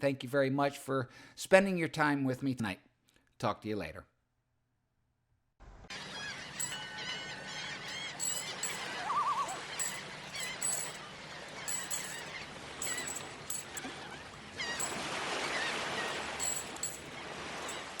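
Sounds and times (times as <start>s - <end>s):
birds chirping: 5.9s - 18.0s
trilling bird calls: 5.9s - 18.0s.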